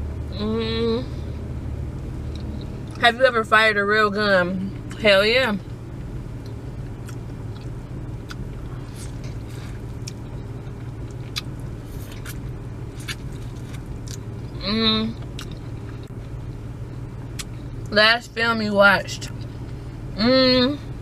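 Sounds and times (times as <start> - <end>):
car engine idling hum: 0.0 - 21.0
person chewing: 6.4 - 14.6, 15.2 - 16.2.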